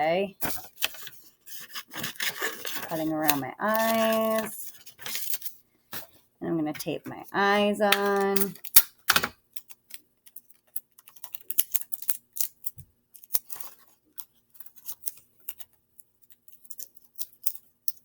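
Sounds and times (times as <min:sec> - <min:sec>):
paper crinkling and rustling: 0:00.4 - 0:06.2.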